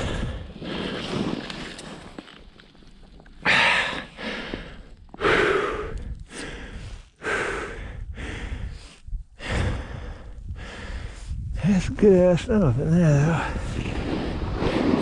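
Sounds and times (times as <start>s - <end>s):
man breathing heavily: 0.0s - 1.0s, 3.4s - 11.5s.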